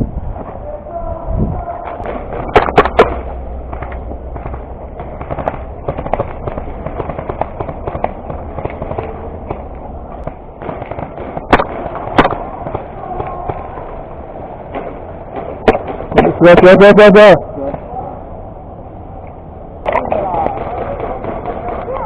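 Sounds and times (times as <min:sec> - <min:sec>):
airsoft gun shots: 0:02.0 - 0:09.6, 0:10.3 - 0:13.6.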